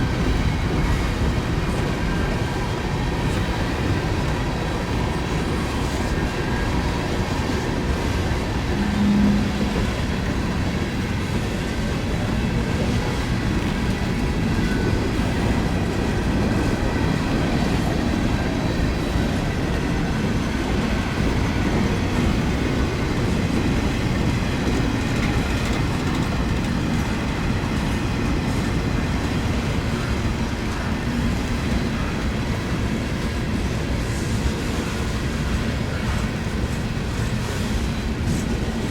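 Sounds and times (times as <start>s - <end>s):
wheel clatter on rails: 0.0s - 34.6s
freight train rolling past: 0.0s - 38.9s.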